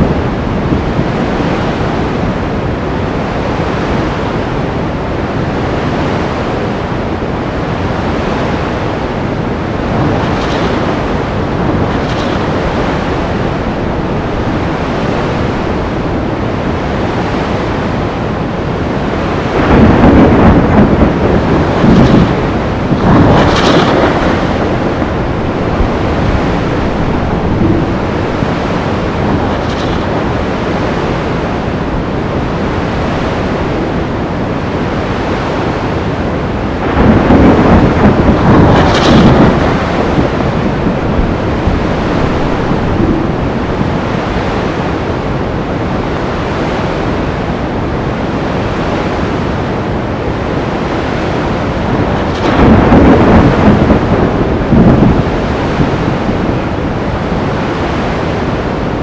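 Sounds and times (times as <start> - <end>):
thunder crash: 0.0 - 2.6, 9.4 - 45.9, 51.3 - 58.6
surf: 0.0 - 59.0
wind: 0.0 - 59.0.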